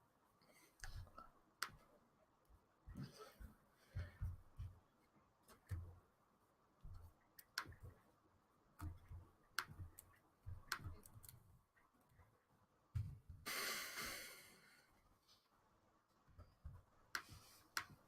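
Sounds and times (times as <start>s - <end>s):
computer mouse clicks: 6.9s - 8.0s, 8.8s - 11.4s, 16.4s - 18.0s
person breathing out: 13.5s - 14.9s.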